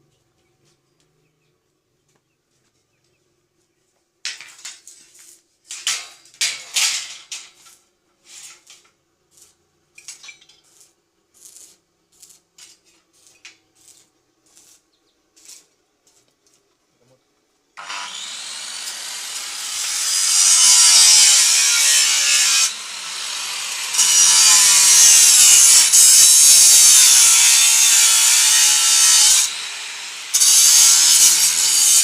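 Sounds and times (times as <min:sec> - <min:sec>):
metal pieces clanking and scraping: 0:05.7 - 0:07.7, 0:10.0 - 0:10.8.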